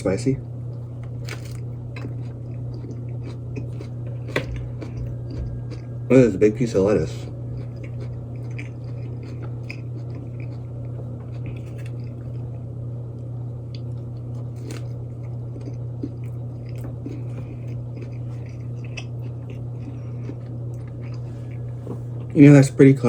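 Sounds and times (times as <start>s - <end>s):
steady low hum: 0.0s - 23.0s
chewing and biting sandwich: 0.6s - 22.4s.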